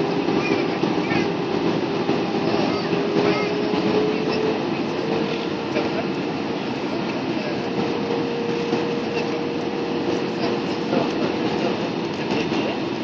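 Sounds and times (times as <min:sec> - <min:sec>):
jet engine and air-conditioning rush: 0:00.0 - 0:13.0.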